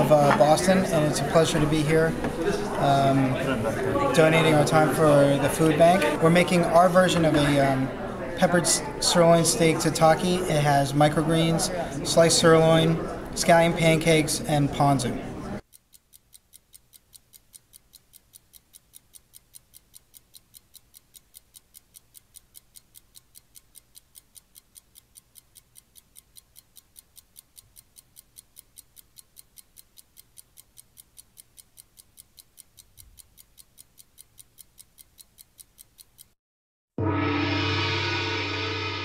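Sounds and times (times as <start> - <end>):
clock ticking: 15.6 - 36.4
loud music: 37.0 - 39.0.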